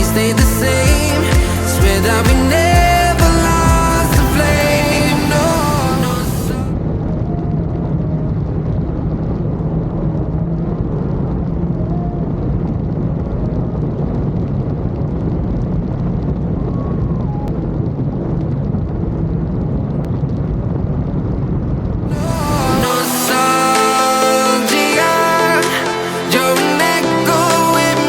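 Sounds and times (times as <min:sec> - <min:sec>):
water noise: 0:00.0 - 0:07.5
rushing wind: 0:00.0 - 0:26.9.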